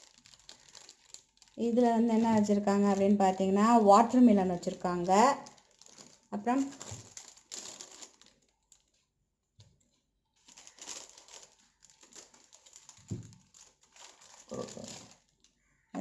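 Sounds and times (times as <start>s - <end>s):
plastic containers crinkling and clicking: 5.4s - 9.0s, 9.6s - 15.6s.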